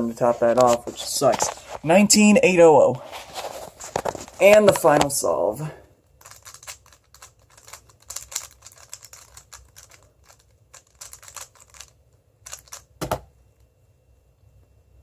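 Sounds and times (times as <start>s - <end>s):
puzzle cube plastic clicks: 6.2s - 13.1s.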